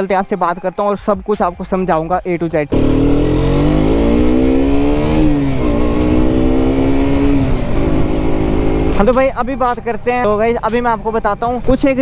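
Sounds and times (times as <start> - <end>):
gear change: 2.7 - 9.2
motorcycle engine accelerating: 2.7 - 9.2.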